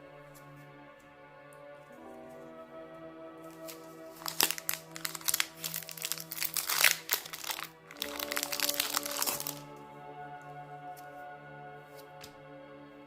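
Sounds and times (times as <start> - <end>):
soft background music: 0.0 - 13.0
plastic wrapper tearing and crinkling: 3.5 - 9.6.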